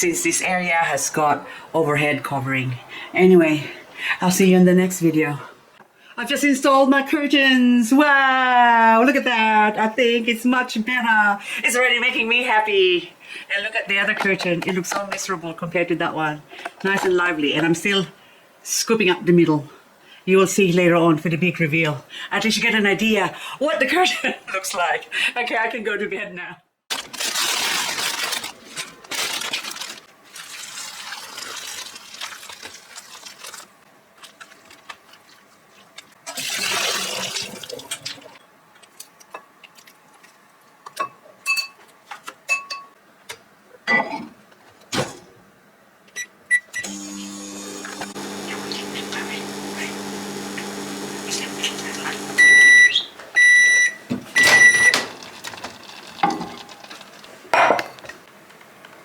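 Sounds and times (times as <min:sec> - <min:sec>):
water running: 0:30.2 - 0:38.4, 0:46.9 - 0:52.8
microwave oven humming: 0:46.8 - 0:53.6
loud beeps: 0:52.4 - 0:55.0.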